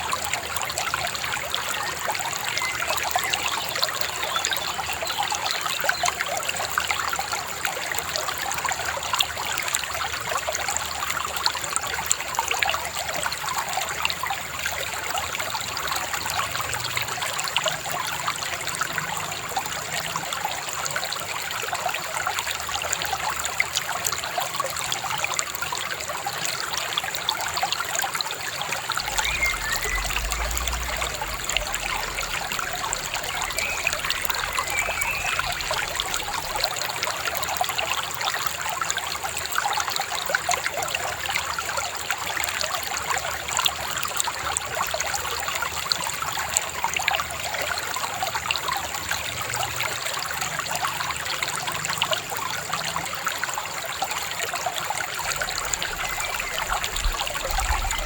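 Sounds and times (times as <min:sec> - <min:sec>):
river babbling over stones: 0:00.0 - 0:58.0
faint bird chirps: 0:29.0 - 0:36.7, 0:55.2 - 0:58.0.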